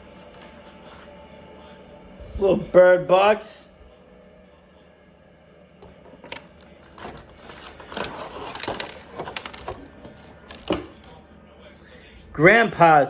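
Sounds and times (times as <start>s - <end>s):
plastic packaging crinkling: 6.2s - 11.2s.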